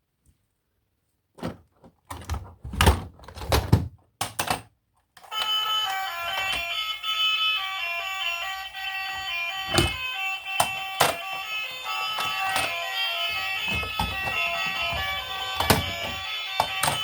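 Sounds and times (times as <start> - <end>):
background music: 5.4 - 17.0.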